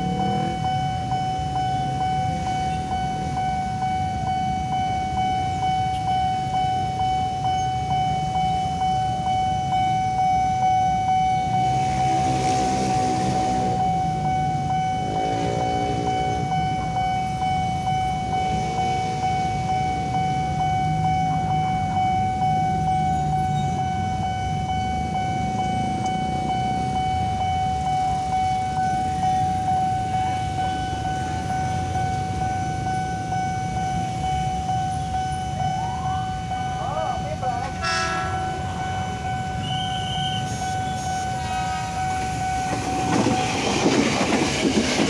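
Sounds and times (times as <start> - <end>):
vehicles revving past: 0.0 - 0.7, 11.7 - 14.0, 14.7 - 17.0
level crossing alarm high tone: 0.0 - 45.0
road traffic: 0.0 - 45.0.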